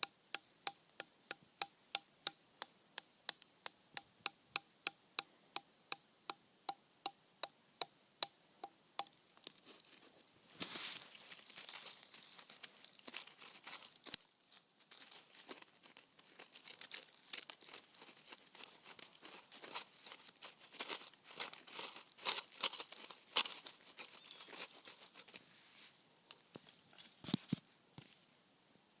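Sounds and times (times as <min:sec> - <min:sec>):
crickets chirring: 0:00.0 - 0:29.0
dry leaves rustling: 0:09.4 - 0:25.5.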